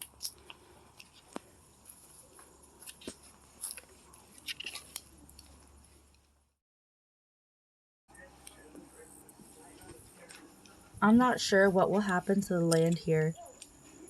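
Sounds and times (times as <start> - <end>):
faint clicks and light crunches: 0.0 - 6.3.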